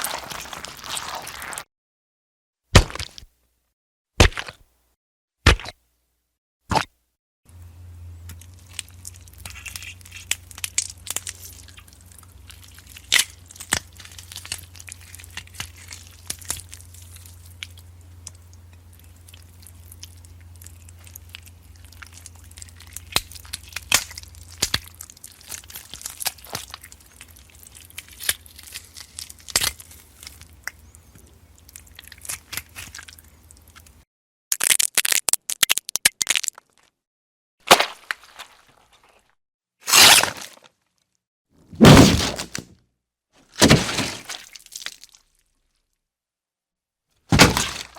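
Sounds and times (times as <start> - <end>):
flesh tearing and bones crunching: 0.0 - 1.7, 2.8 - 3.3, 4.2 - 4.6, 8.4 - 18.4, 19.0 - 30.8, 31.6 - 33.2, 34.5 - 36.9, 37.6 - 39.2, 39.8 - 40.8, 41.8 - 42.7, 43.5 - 45.4, 47.3 - 47.9
low steady hum: 7.5 - 34.0.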